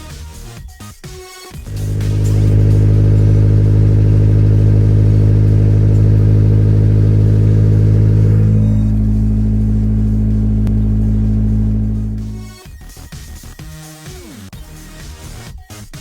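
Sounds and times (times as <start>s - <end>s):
car engine running: 1.6s - 12.6s.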